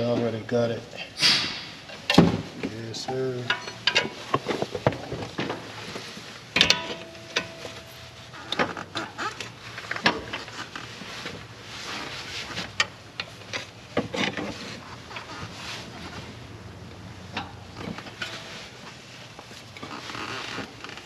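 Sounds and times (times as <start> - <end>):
metal tools clinking: 3.1 - 4.3, 6.6 - 8.2.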